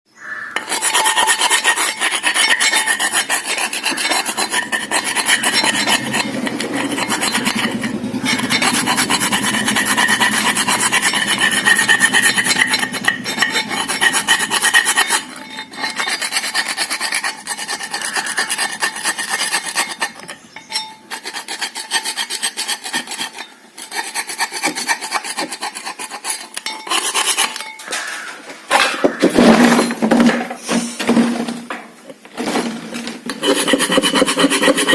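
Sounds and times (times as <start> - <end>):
rasping scraping noise: 0.5 - 30.0, 32.4 - 34.9.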